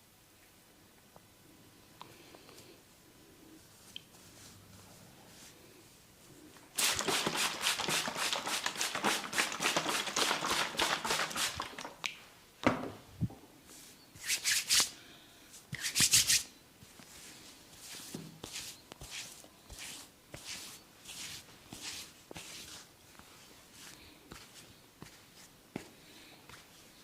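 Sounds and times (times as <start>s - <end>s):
fingers scratching through hair: 6.8s - 11.9s, 15.7s - 16.5s.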